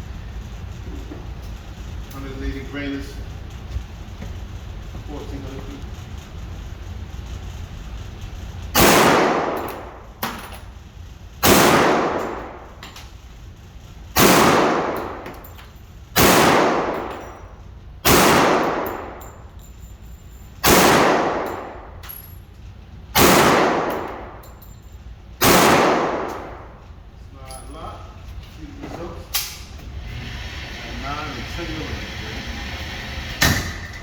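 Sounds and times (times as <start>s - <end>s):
pistol shots echoing: 8.8s - 9.9s, 11.4s - 12.6s, 14.2s - 15.2s, 16.2s - 17.2s, 18.0s - 19.2s, 20.6s - 21.8s, 23.2s - 24.4s, 25.4s - 26.7s.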